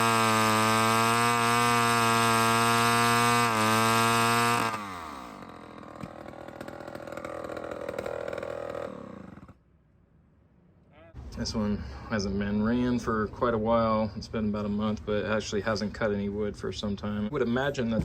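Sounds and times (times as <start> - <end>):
chainsaw engine running: 0.0 - 9.6.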